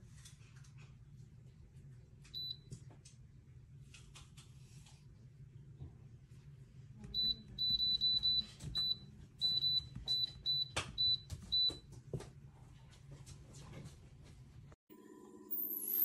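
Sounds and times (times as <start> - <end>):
short electronic beeps: 15.5 - 16.0.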